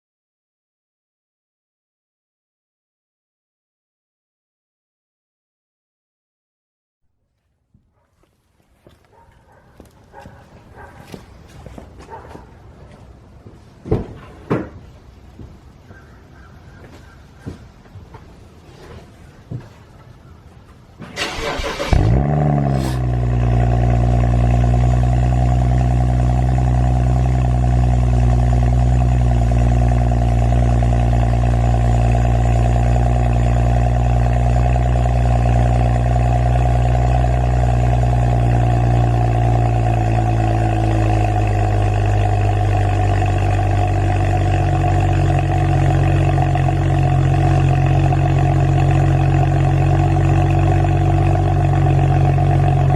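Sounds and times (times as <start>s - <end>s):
engine cranking and idling: 21.0s - 52.9s.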